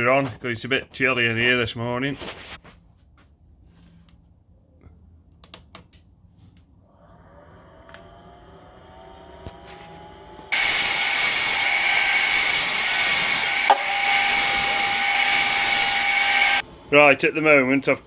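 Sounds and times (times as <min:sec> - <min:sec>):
motor hum rising in pitch: 0:06.9 - 0:16.9
power saw cutting wood: 0:09.2 - 0:16.6.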